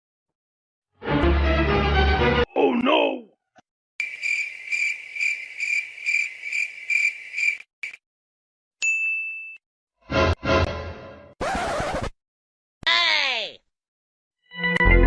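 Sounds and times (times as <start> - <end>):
crickets chirping: 4.0 - 8.0.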